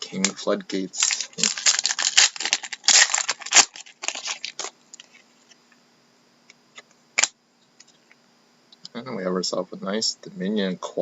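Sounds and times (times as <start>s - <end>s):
cards rustling and flicking: 0.1s - 5.2s.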